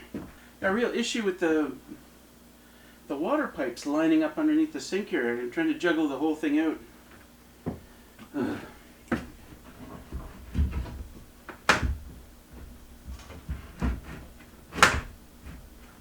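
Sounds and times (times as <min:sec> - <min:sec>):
knocks and bangs of countertop: 0:09.1 - 0:16.0.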